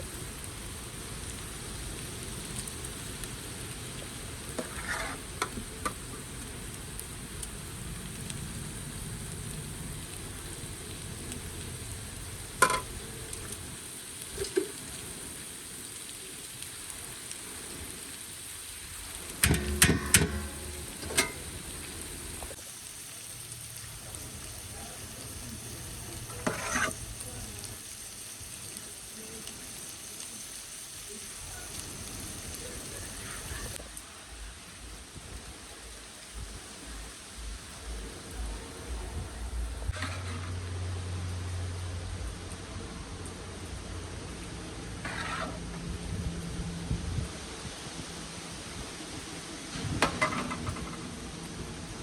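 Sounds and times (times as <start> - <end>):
food sizzling in a pot: 0.0 - 42.1, 43.1 - 52.0.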